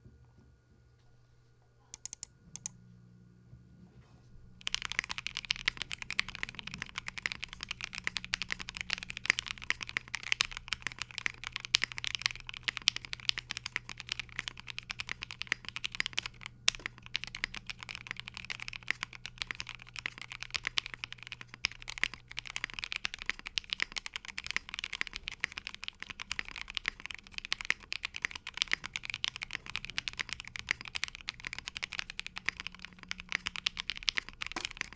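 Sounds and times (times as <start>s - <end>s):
typing on a mechanical keyboard: 1.9s - 2.7s, 4.6s - 34.9s.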